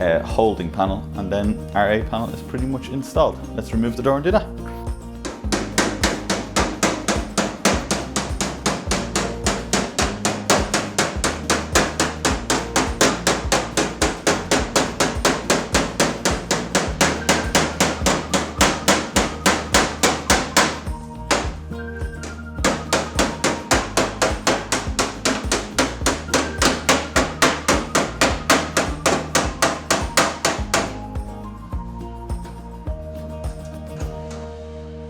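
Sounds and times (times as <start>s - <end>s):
background music: 0.0s - 35.0s
hammer blows on sheet metal: 5.2s - 31.3s.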